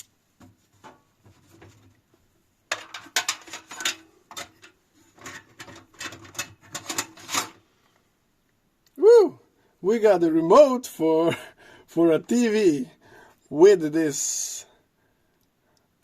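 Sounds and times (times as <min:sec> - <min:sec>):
plastic and metal parts clattering: 0:02.7 - 0:07.6.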